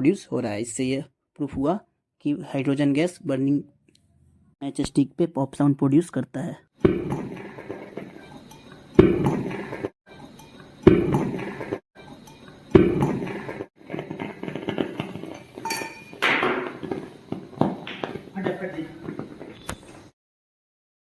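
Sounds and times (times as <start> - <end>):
hydrogen igniting with sharp pops: 6.8 - 8.3, 12.7 - 20.1
soft glass clinks: 15.6 - 16.2.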